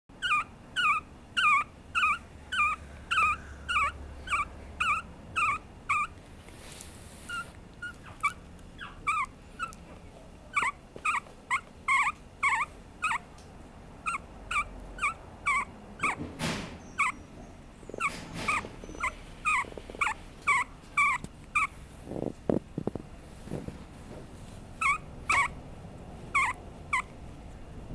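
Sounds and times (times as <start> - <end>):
puppy whimpering: 0.2 - 6.2, 7.3 - 13.3, 14.0 - 16.2, 16.8 - 22.3, 24.8 - 25.6, 26.3 - 27.2
rustling handling noises: 6.2 - 8.7, 18.0 - 24.8.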